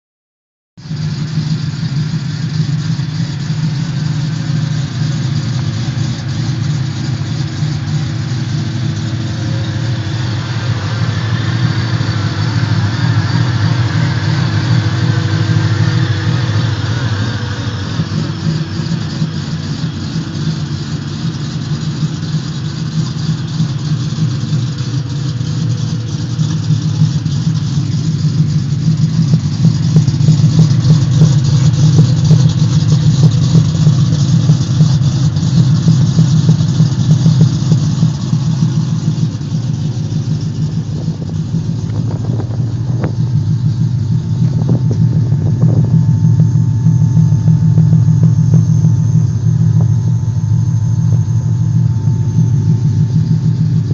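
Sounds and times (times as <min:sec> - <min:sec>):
pickup truck engine running: 0:00.8 - 0:53.9.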